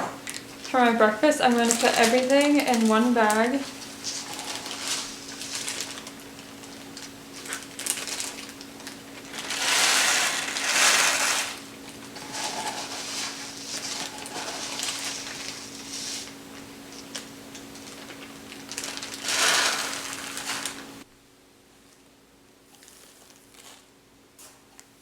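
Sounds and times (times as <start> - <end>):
faint steady hum: 0.0 - 25.0
plastic bag rustling and crinkling: 0.2 - 21.0, 22.7 - 24.8
dry food pouring into bag: 1.5 - 21.0.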